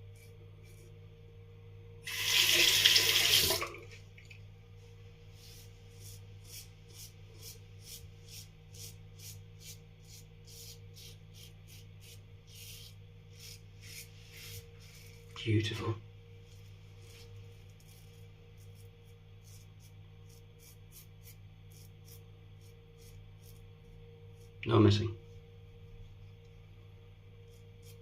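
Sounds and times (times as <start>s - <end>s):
razor scraping stubble: 0.0s - 0.9s, 5.4s - 15.3s, 17.1s - 23.7s, 27.5s - 28.0s
water tap running: 2.0s - 4.0s.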